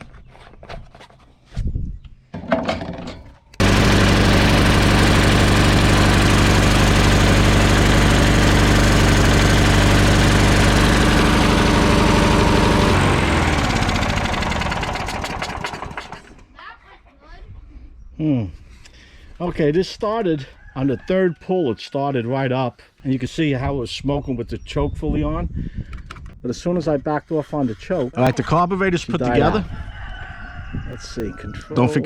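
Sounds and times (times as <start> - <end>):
lawn mower engine pull-started: 2.4 - 16.5.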